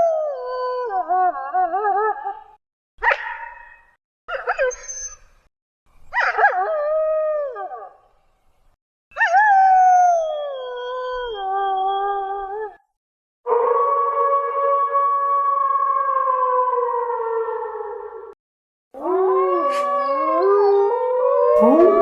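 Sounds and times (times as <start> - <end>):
wolf howling: 13.5 - 18.4, 19.0 - 22.0
wolf yelping calls: 21.6 - 22.0.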